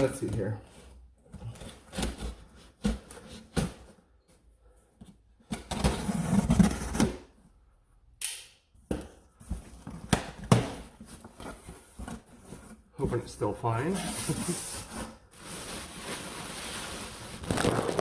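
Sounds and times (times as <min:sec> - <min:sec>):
cardboard scraping and rustling: 0:05.5 - 0:07.3, 0:09.4 - 0:18.0.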